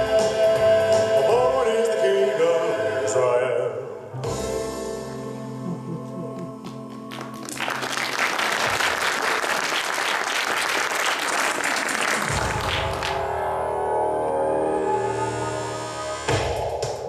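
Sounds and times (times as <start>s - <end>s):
song notes: 4.0s - 7.6s
audience clapping: 6.3s - 13.3s.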